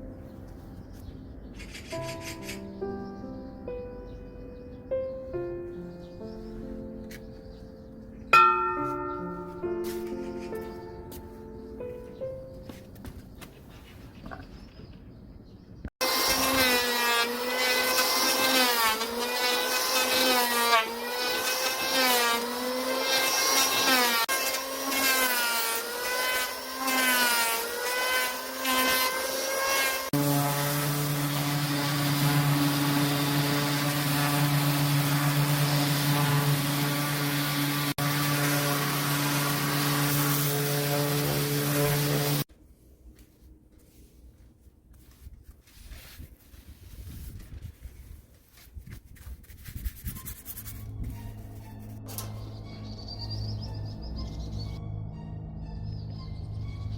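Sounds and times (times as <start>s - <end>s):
power tool cutting steel rail: 16.0s - 42.5s, 52.1s - 52.6s.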